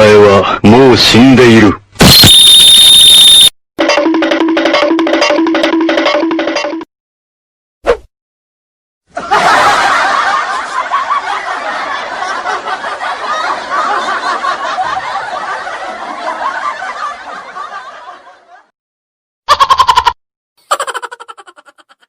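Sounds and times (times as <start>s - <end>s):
crowd laughing: 9.1s - 18.7s, 19.5s - 22.0s.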